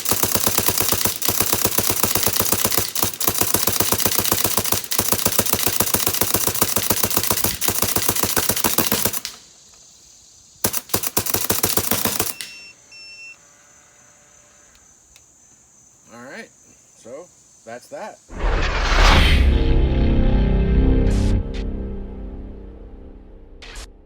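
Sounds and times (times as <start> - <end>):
paintball marker firing rapidly: 0.0 - 9.4, 10.6 - 12.6.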